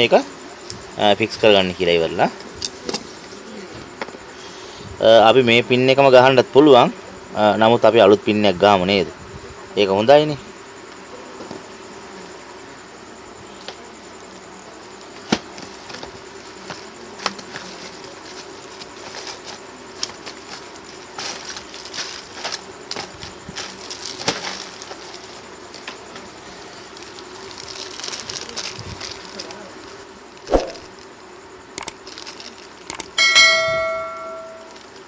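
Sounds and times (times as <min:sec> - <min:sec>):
steady electrical buzz: 0:15.6 - 0:35.0
clicks and taps of tools: 0:32.9 - 0:33.2.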